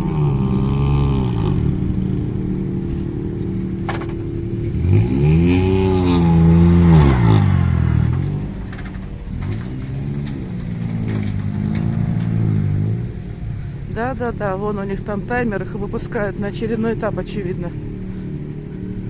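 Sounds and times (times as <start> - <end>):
another engine passing: 0.0 - 19.0
rally car engine revving: 0.0 - 19.0.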